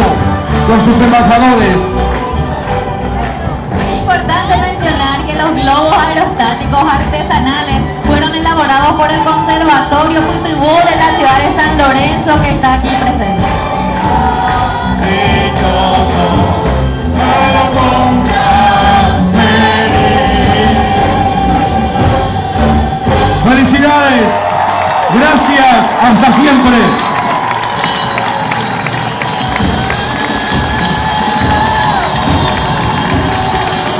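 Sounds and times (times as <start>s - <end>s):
orchestra playing: 0.0s - 24.5s
crowd noise: 0.0s - 33.9s
choir singing sustained chords: 13.4s - 23.4s.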